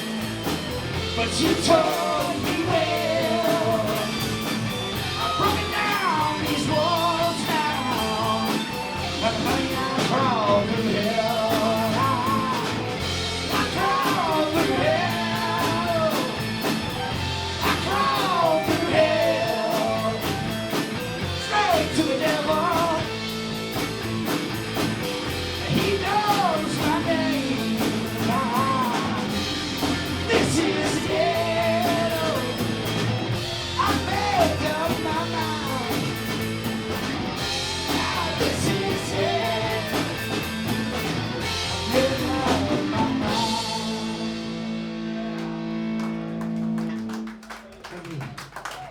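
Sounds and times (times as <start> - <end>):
live rock band playing: 0.0 - 47.5
lead guitar melody: 32.4 - 47.2.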